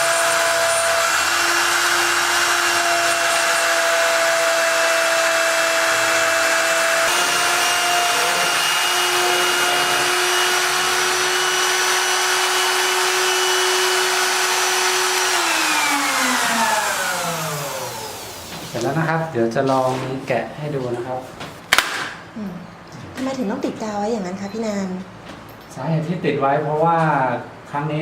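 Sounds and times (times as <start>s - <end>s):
router spindle whining: 0.0s - 18.9s.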